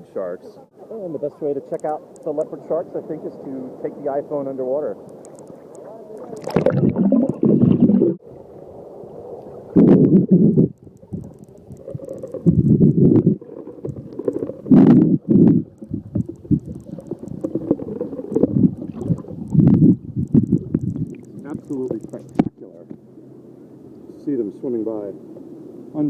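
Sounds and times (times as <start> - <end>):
water sloshing surges: 0.8 - 26.0
muffled underwater rumble: 5.2 - 25.9.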